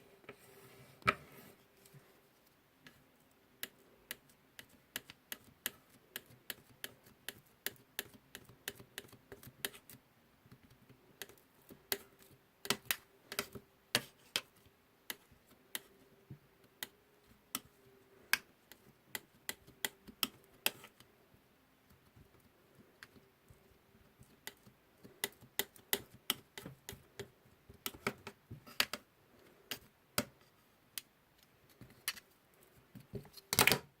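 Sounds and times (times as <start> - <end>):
faint steady hum: 0.0 - 34.0.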